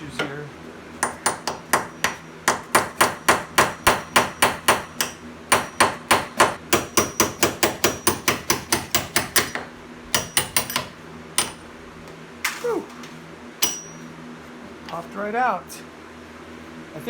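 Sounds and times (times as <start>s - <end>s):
hammer striking metal tool: 1.0s - 11.6s, 13.6s - 14.0s.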